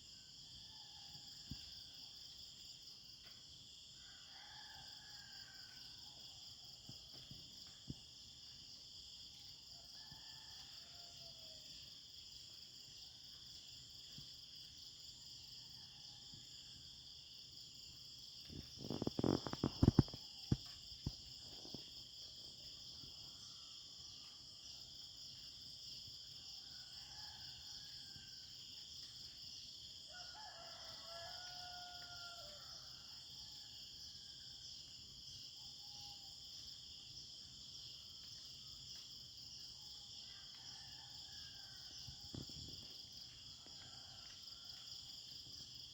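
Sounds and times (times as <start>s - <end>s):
crickets and insects chirring: 0.0s - 45.9s
rooster crowing: 30.1s - 33.0s.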